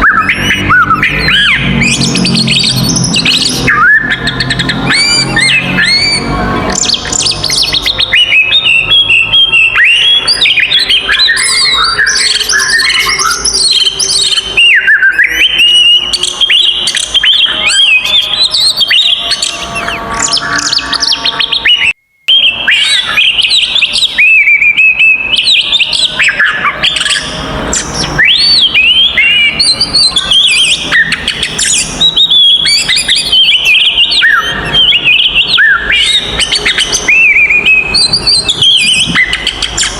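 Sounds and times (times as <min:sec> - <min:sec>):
bird singing fast whistles: 0:00.0 - 0:39.9.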